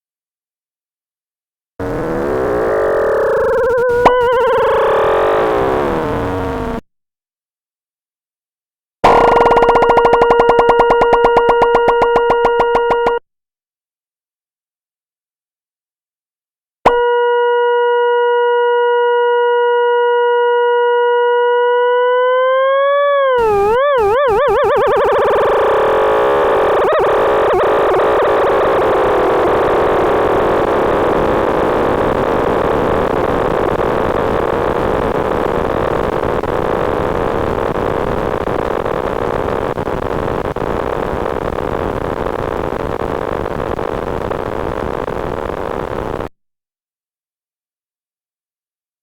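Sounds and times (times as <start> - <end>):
harsh dense buzz: 1.8 - 6.8, 23.4 - 46.3
warbling computer tones: 1.8 - 6.8, 9.0 - 13.2, 23.4 - 46.0.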